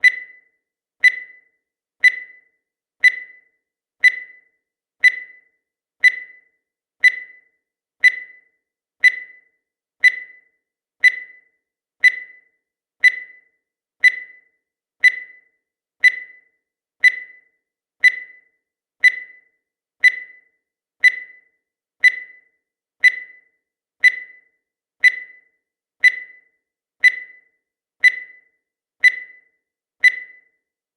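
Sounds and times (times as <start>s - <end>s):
high electronic beep: 0.0s - 6.4s, 28.0s - 30.5s.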